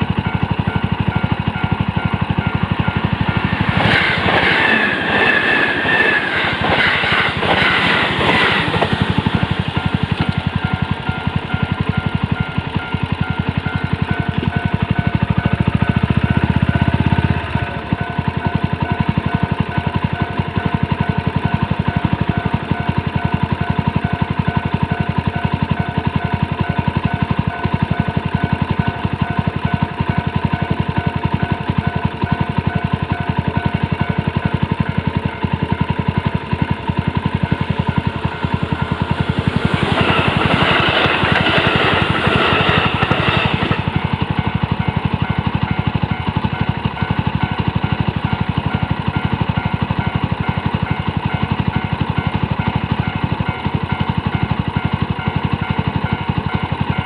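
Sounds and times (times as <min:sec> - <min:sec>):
loud rushing noise: 0:03.1 - 0:10.2.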